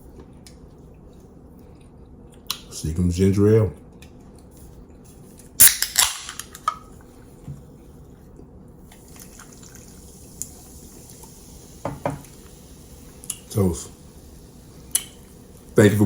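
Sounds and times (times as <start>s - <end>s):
can opening pop and hiss: 5.6s - 6.8s, 14.9s - 15.4s.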